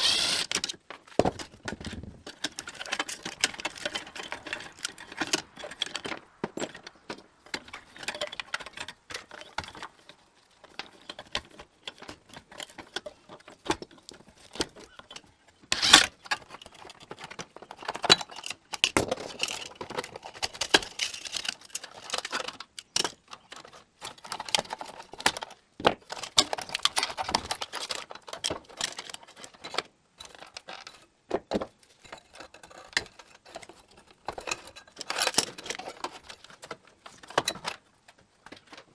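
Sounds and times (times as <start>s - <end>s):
metal parts and tools clinking: 0.0s - 0.7s, 15.8s - 16.1s.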